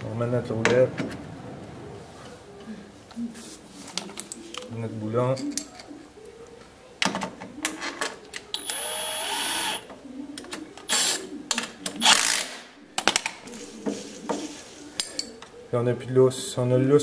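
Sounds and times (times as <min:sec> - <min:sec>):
power driver running: 0:08.6 - 0:09.8.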